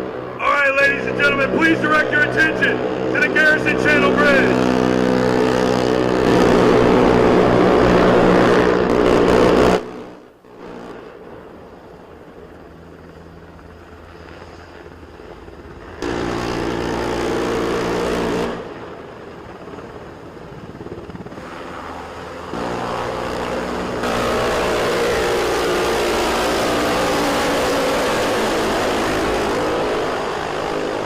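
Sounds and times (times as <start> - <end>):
engines running: 0.0 - 31.0.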